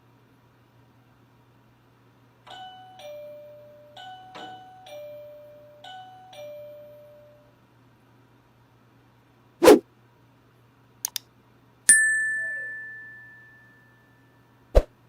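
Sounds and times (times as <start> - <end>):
two-tone doorbell chime: 2.5 - 7.5, 11.9 - 14.6.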